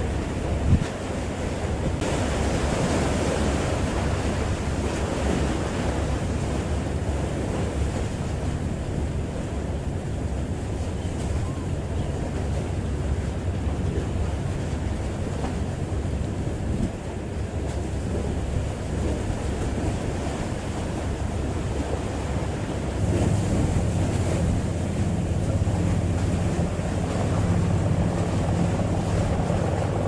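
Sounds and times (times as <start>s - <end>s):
sea waves: 0.0s - 30.0s
wind buffeting microphone: 0.0s - 30.0s
low steady hum: 21.3s - 30.0s.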